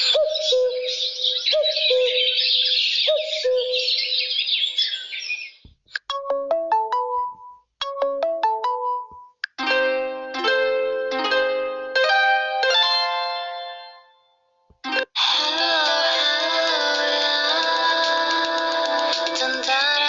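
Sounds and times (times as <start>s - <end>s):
ringtone melody of bright notes: 0.0s - 4.3s, 6.0s - 20.0s
birdsong-style ringtone chirping: 0.0s - 15.0s.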